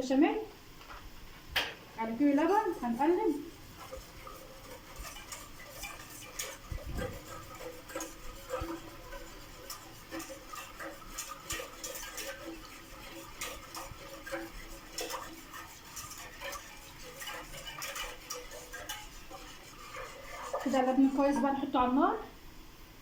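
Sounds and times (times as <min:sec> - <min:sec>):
utensil clinking and scraping a pot: 0:02.0 - 0:22.2.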